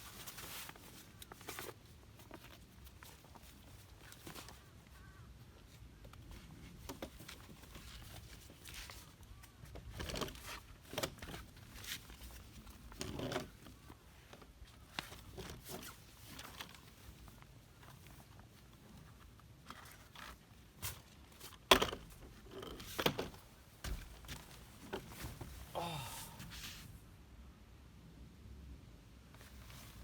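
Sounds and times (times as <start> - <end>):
rustling and scraping of handling: 0.0 - 27.0, 29.3 - 30.0.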